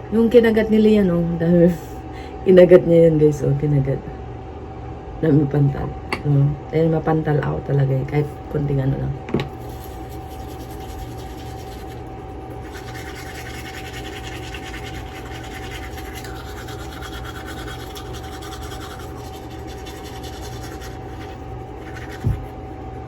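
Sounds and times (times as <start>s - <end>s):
faint background hum: 0.0s - 23.0s
toothbrush scrubbing teeth: 9.6s - 23.0s.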